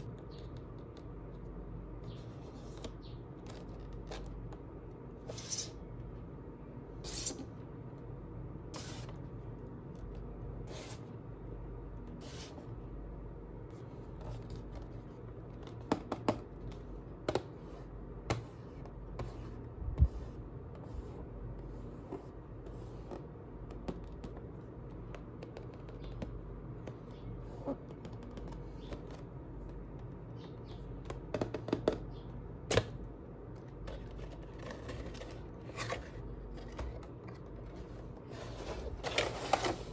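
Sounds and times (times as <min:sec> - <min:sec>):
low steady hum: 0:00.0 - 0:39.9
packaging clicks scrapes and rustles: 0:33.9 - 0:39.9.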